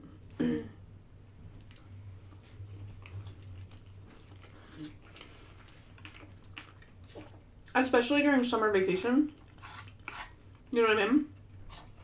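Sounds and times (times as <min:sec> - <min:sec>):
low steady hum: 0:00.0 - 0:12.0
person chewing food: 0:01.5 - 0:07.4.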